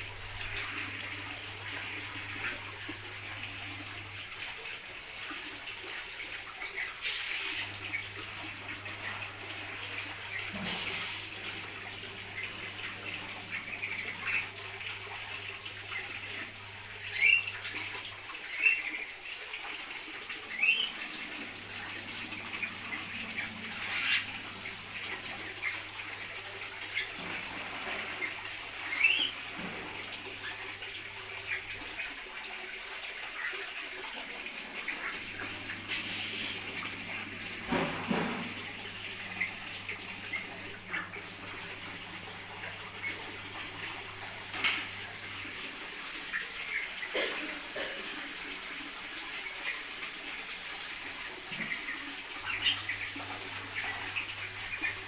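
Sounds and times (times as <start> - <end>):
running water: 0.0 - 55.0
birds chirping: 6.6 - 19.2, 20.4 - 32.2, 33.3 - 45.3.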